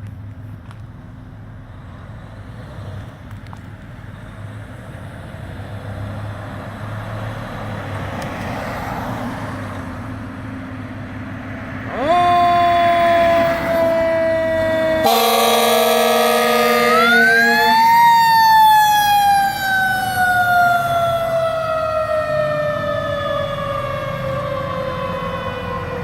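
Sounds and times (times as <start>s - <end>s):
fire engine running: 0.0s - 26.0s
air horn blast: 11.9s - 17.9s.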